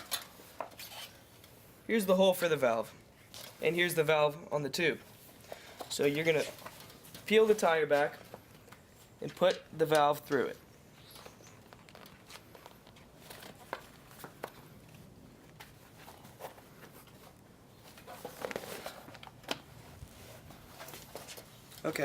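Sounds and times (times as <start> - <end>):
rubbery rustles of inner tube: 11.0 - 22.0.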